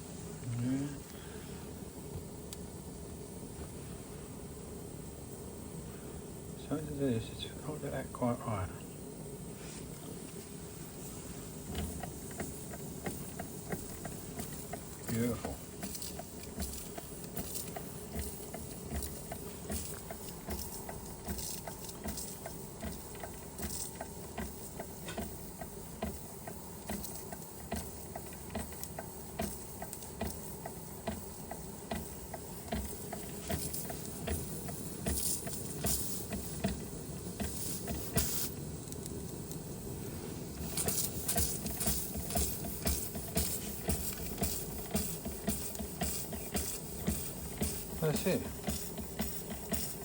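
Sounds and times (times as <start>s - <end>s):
toy steam engine exhaust beat: 10.8s - 50.0s
light mechanical ticking: 10.9s - 50.0s.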